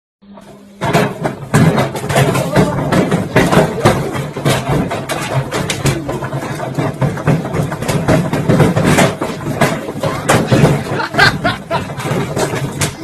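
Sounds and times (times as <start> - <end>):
washing machine hum: 0.2 - 13.0
brick banging in washing machine: 0.4 - 13.0.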